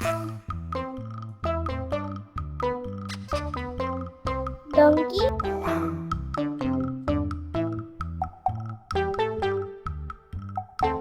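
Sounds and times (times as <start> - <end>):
bouncy children's music: 4.7 - 6.1.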